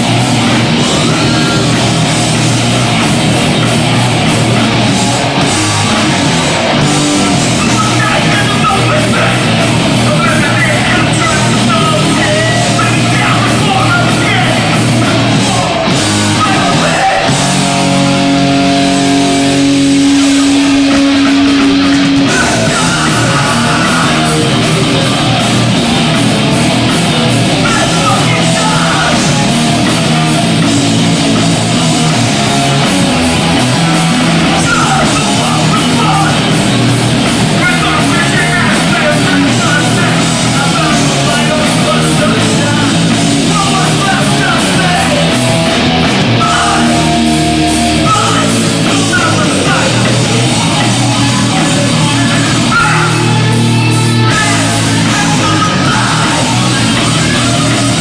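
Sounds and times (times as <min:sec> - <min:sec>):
punk band playing live: 0:00.0 - 0:58.0
person singing: 0:07.2 - 0:18.4, 0:19.0 - 0:26.0, 0:27.3 - 0:30.3, 0:33.6 - 0:45.6, 0:46.3 - 0:58.0.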